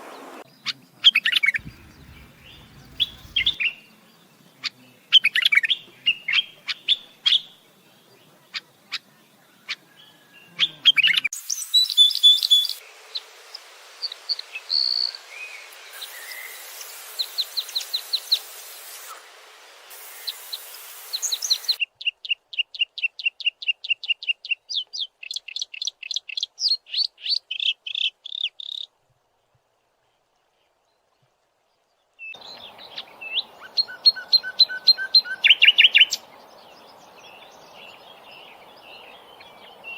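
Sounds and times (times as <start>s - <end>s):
songbirds chirping and singing: 1.6s - 11.3s, 32.3s - 39.9s.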